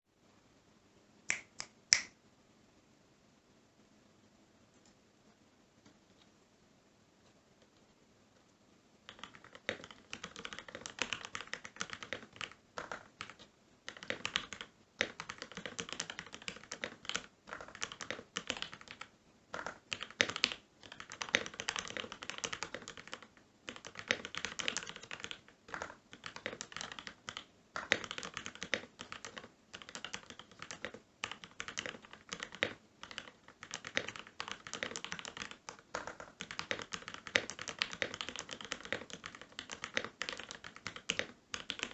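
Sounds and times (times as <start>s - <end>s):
mechanical keyboard typing: 9.1s - 41.9s.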